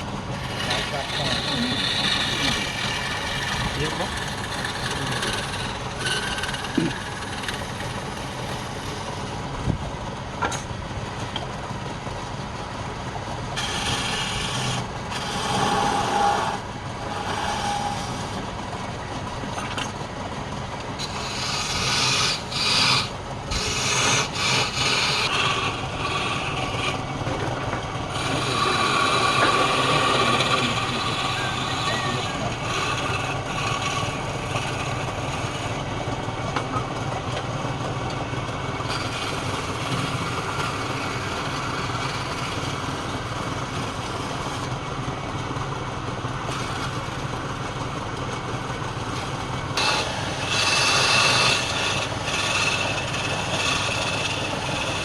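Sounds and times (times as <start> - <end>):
tool cutting spinning wood: 0.0 - 55.0
wood lathe humming: 0.0 - 55.0.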